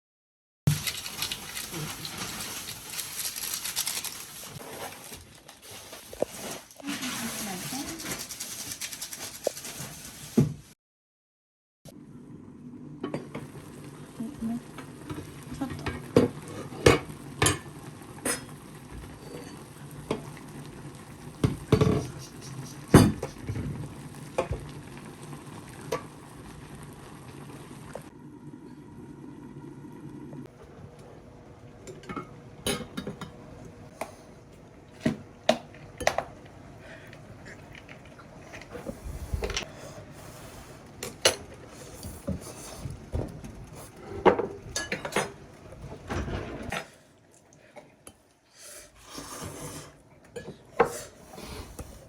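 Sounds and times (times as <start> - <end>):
food sizzling on a grill: 0.7 - 4.2, 13.4 - 28.1
dishes and utensils clinking: 21.4 - 23.7, 31.9 - 33.4, 44.1 - 45.4.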